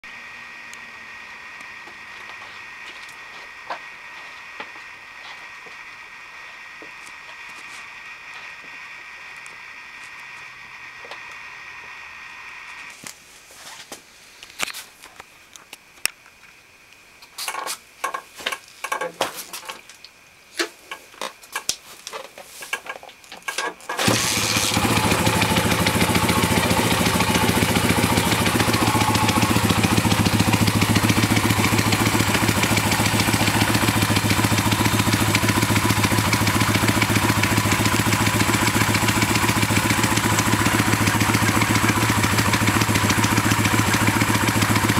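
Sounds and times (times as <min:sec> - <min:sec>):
engine clicks and clunks: 0:22.7 - 0:44.9
motorbike engine running loudly: 0:24.0 - 0:44.9.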